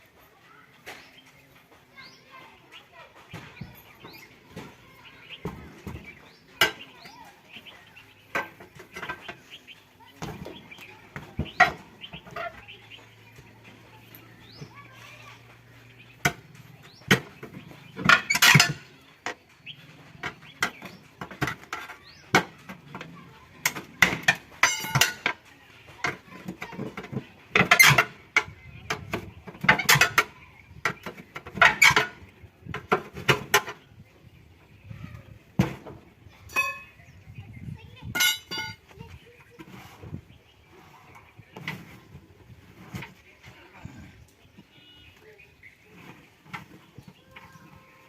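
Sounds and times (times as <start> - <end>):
metal tools clinking and knocking: 18.0 - 19.0, 24.6 - 25.3, 36.5 - 37.0, 38.1 - 38.8.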